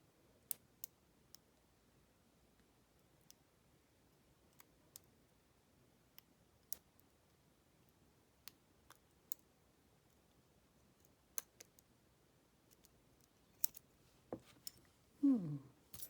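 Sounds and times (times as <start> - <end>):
person humming: 15.2 - 15.8.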